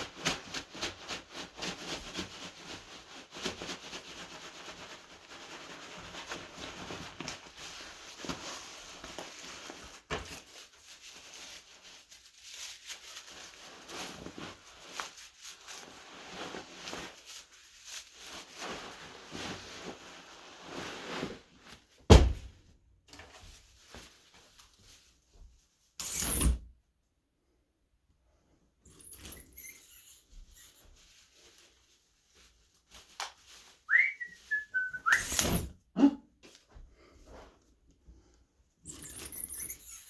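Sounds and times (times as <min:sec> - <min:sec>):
rubbing and rustling: 0:00.0 - 0:22.1, 0:23.2 - 0:26.0, 0:29.3 - 0:35.7.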